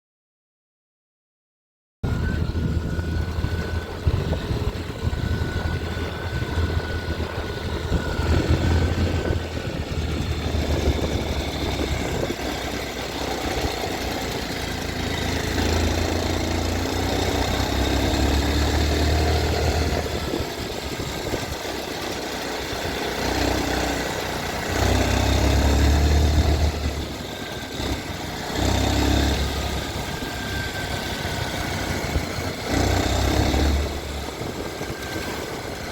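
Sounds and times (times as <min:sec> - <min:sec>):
strange mechanical engine noise: 0:02.0 - 0:35.9
motorcycle engine idling: 0:02.1 - 0:18.0.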